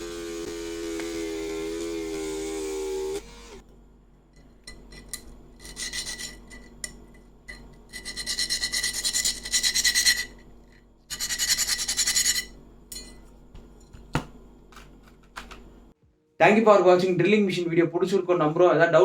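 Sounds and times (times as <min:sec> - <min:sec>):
rotary drill grinding: 0:00.0 - 0:03.6.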